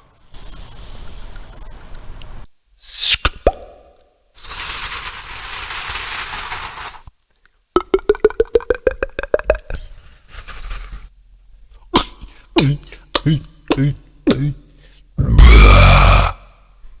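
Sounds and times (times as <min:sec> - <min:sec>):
person beatboxing: 0:12.0 - 0:14.6.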